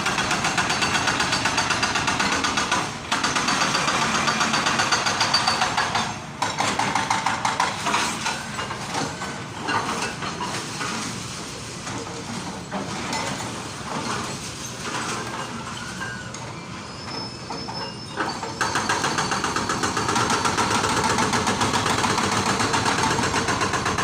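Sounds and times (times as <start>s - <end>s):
jackhammer hammering: 0.0s - 9.2s, 18.6s - 24.0s.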